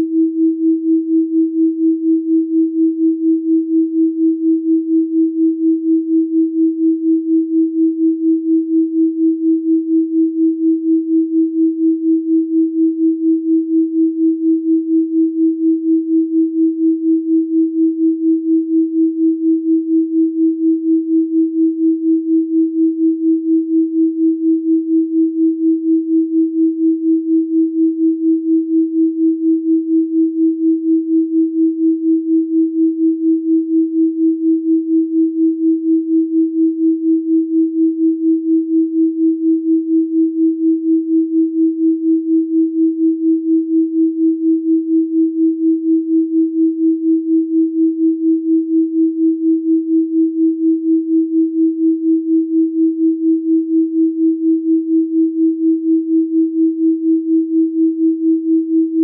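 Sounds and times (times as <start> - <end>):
pulsing sine tone: 0.0 - 59.0.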